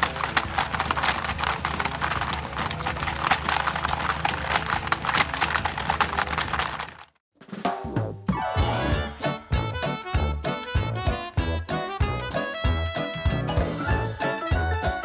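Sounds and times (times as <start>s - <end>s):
rapid irregular clattering taps: 0.0s - 7.2s.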